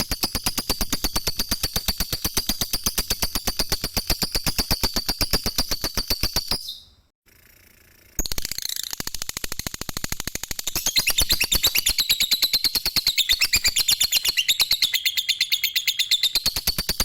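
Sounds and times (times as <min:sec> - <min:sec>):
lovebird chattering trill: 0:10.7 - 0:17.0.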